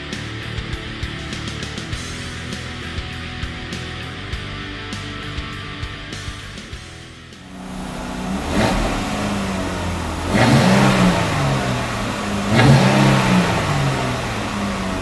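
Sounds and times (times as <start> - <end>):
car engine revving: 7.4 - 15.0.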